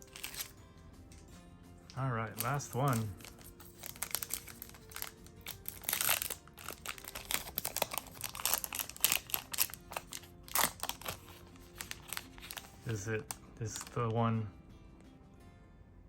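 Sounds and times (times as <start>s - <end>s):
wrapper crinkling and tearing: 0.0s - 0.5s, 1.9s - 14.0s
faint background music: 0.0s - 16.0s.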